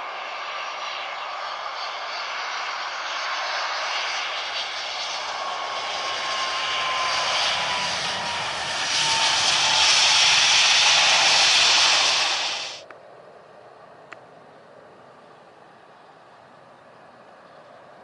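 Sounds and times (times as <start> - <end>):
jet engines roaring: 0.0 - 12.9.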